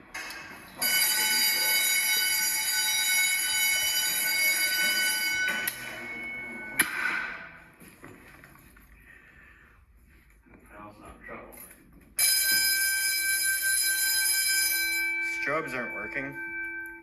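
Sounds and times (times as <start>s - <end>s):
fire alarm bell ringing: 0.2s - 7.6s, 12.2s - 17.0s
sharp clunk: 6.8s - 7.5s.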